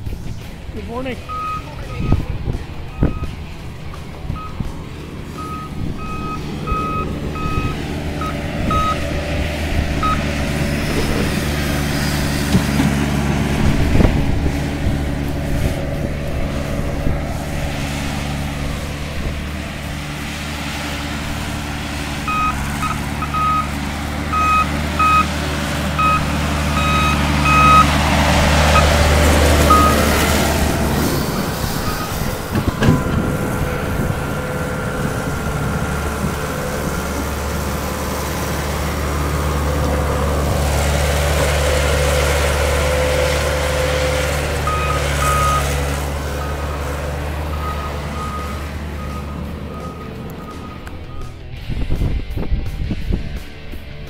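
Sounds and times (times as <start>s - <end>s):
truck engine running: 0.0s - 54.0s
reversing alarm beeping: 1.3s - 2.3s, 2.9s - 3.4s, 4.3s - 4.7s, 5.3s - 9.1s, 10.0s - 10.3s, 22.2s - 28.0s, 28.7s - 30.2s, 31.7s - 33.6s, 44.6s - 45.8s, 47.5s - 51.4s.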